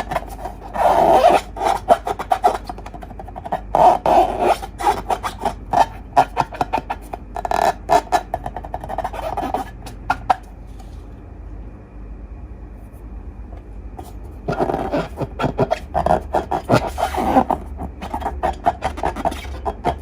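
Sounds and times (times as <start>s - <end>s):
slime squishing: 14.0s - 20.0s.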